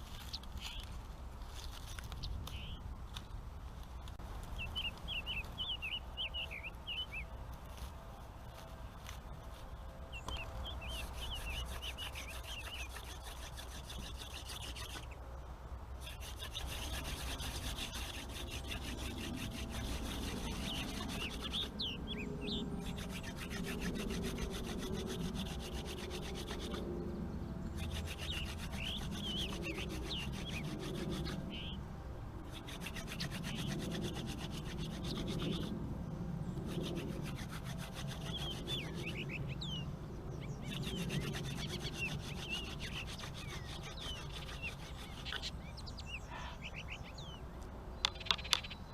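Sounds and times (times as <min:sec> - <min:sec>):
birds chirping: 0:01.6 - 0:02.9, 0:04.0 - 0:31.8, 0:32.4 - 0:48.9
wooden hand drill rubbing: 0:07.5 - 0:15.2, 0:16.0 - 0:26.9, 0:27.7 - 0:31.7, 0:32.4 - 0:35.8, 0:36.6 - 0:39.3, 0:40.6 - 0:45.8.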